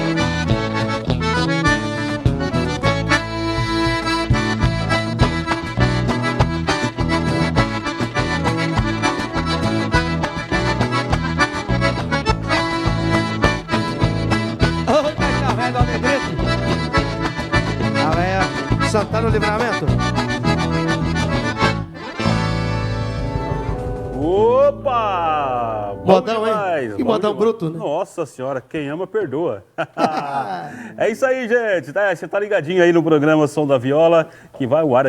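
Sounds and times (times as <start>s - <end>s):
accordion playing: 0.0s - 27.6s
bass and rhythm accompaniment: 0.0s - 27.6s.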